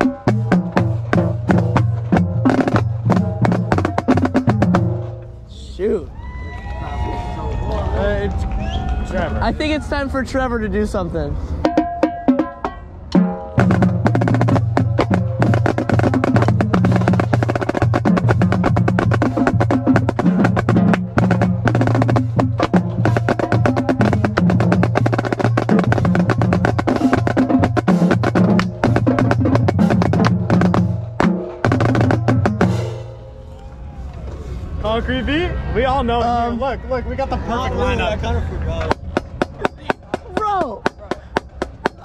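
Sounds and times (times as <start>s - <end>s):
marching snare drum rolls: 0.0s - 5.2s, 11.6s - 33.3s, 38.7s - 42.0s.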